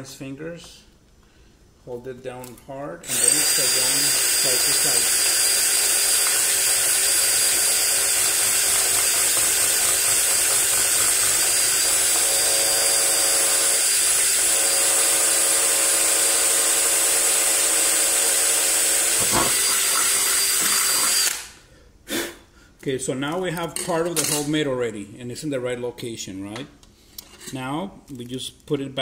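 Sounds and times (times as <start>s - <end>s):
electric drill cutting slats: 3.0s - 21.6s.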